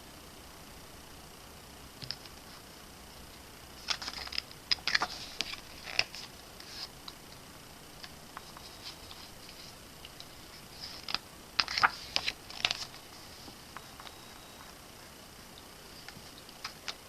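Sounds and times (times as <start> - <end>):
book pages rustling: 3.8 - 7.0, 8.4 - 15.1.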